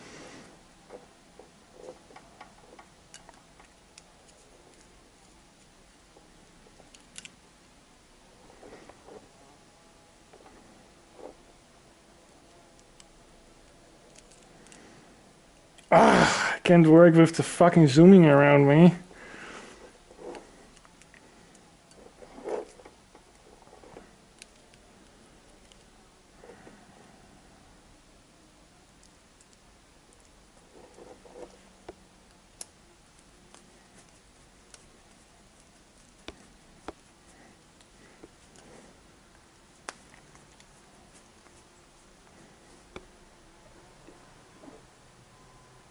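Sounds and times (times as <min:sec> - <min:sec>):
soft rustle: 0:08.3 - 0:09.6, 0:10.3 - 0:11.6, 0:19.1 - 0:27.5, 0:29.0 - 0:45.1.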